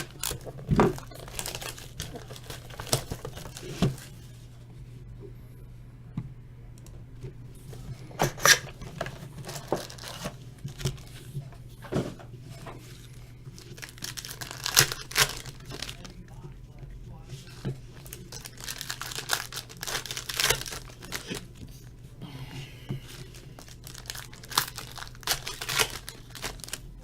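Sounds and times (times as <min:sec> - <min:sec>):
plastic wrapper crinkling: 0:00.0 - 0:04.4, 0:07.6 - 0:11.6, 0:12.5 - 0:16.4, 0:17.4 - 0:22.0, 0:23.0 - 0:27.0.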